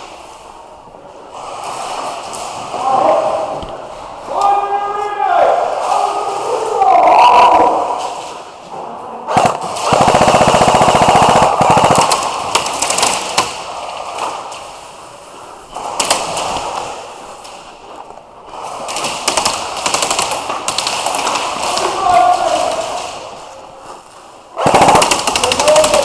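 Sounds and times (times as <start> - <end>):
airsoft rifle firing: 9.3 - 13.7, 18.8 - 23.2, 24.6 - 26.0.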